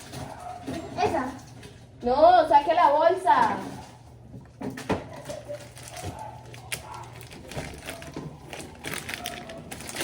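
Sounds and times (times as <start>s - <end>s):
plastic bag rustling: 0.0s - 1.8s, 5.1s - 10.0s.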